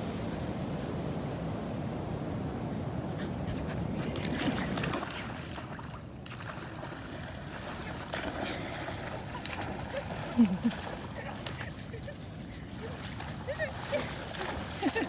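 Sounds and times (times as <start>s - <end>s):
wind: 0.0s - 15.0s
surf: 3.3s - 15.0s.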